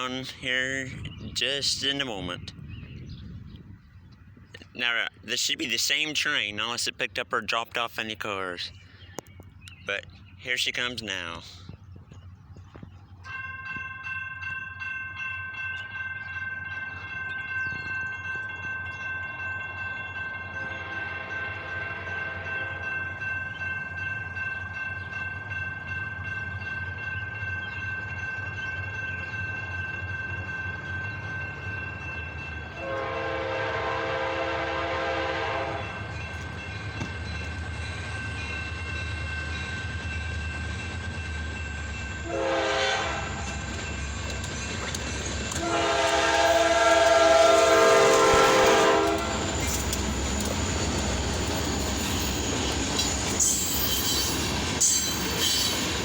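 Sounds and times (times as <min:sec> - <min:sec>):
locomotive rumble: 0:00.0 - 0:56.0
crossing bell ringing: 0:13.0 - 0:56.0
locomotive air horn blasts: 0:32.8 - 0:35.9, 0:42.2 - 0:43.5, 0:45.6 - 0:49.5.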